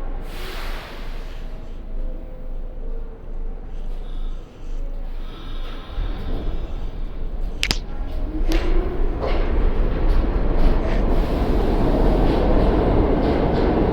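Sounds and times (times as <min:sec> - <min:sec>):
subway car rumble: 0:00.0 - 0:07.3, 0:08.9 - 0:13.9
sharp clack: 0:07.6 - 0:07.9.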